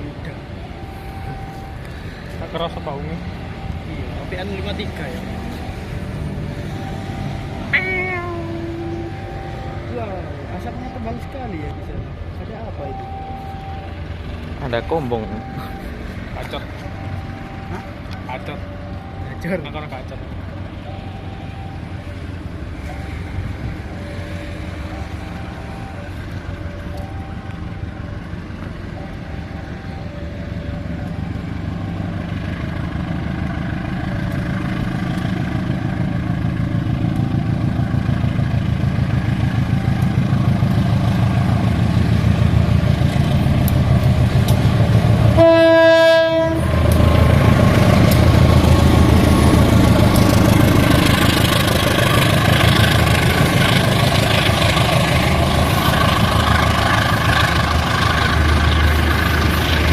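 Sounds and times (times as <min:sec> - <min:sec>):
diesel locomotive engine rumble: 0:00.0 - 0:59.9
alternating two-tone signal: 0:00.6 - 0:12.2, 0:12.8 - 0:14.0, 0:14.7 - 0:32.0, 0:35.7 - 0:41.6
locomotive horn blast: 0:07.7 - 0:09.6, 0:45.3 - 0:47.0.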